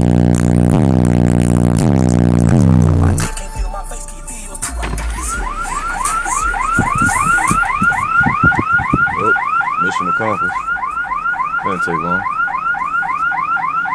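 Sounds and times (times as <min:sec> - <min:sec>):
low bass thumps: 0:00.0 - 0:04.0, 0:04.6 - 0:09.4
car alarm chirping: 0:02.7 - 0:13.9.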